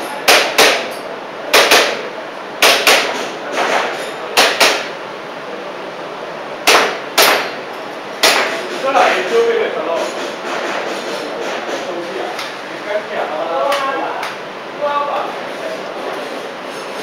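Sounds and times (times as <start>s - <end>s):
airsoft pistol shots: 6.7s - 7.6s.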